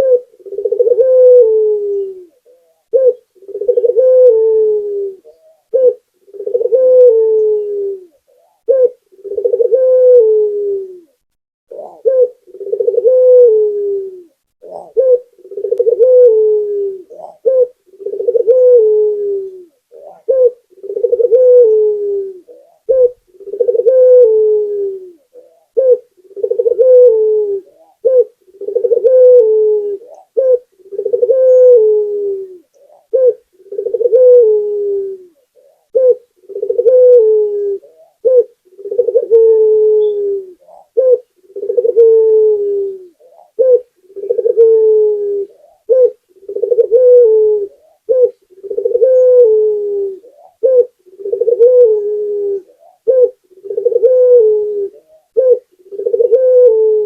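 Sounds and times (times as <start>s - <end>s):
dove cooing: 0.0s - 57.0s.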